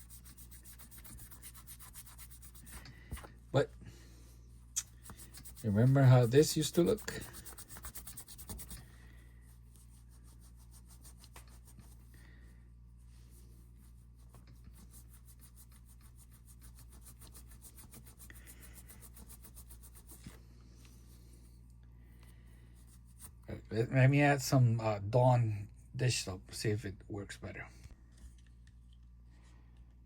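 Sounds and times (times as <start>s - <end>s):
sponge scrubbing a strap: 0.0s - 3.0s, 4.8s - 8.9s, 9.6s - 12.1s, 13.4s - 20.4s
low steady hum: 0.0s - 30.0s.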